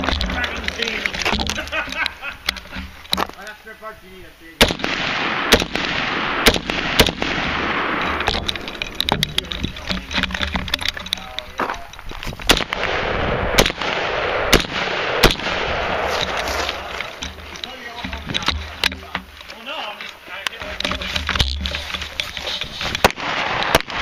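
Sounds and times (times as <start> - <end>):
rifle shots: 4.6 - 9.1, 12.4 - 17.6, 23.0 - 24.0
steady rushing noise: 4.8 - 24.0.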